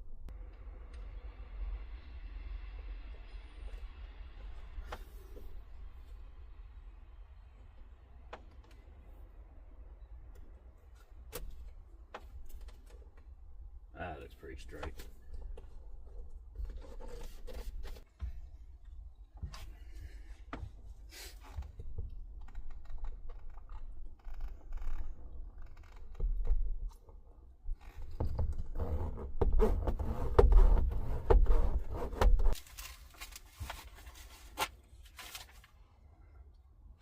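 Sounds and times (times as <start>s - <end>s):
scraping and scratching handling noises: 14.7s - 18.5s, 30.0s - 35.8s.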